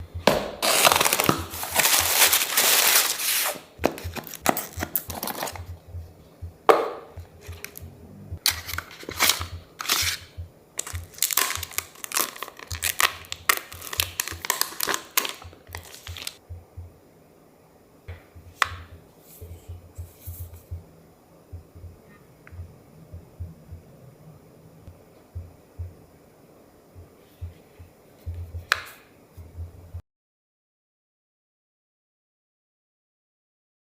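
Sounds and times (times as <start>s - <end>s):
packaging rustling: 0.6s - 5.7s, 7.4s - 7.8s, 8.4s - 16.4s
plastic and paper tearing: 0.6s - 5.7s, 8.5s - 10.2s, 10.8s - 16.4s.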